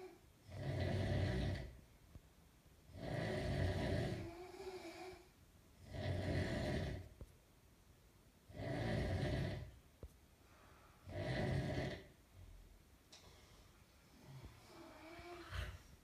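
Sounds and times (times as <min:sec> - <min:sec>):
person snoring: 0:00.0 - 0:01.8, 0:02.9 - 0:07.1, 0:08.5 - 0:09.8, 0:11.0 - 0:12.1, 0:14.2 - 0:15.8
quiet breaths: 0:00.0 - 0:07.4, 0:08.4 - 0:16.0.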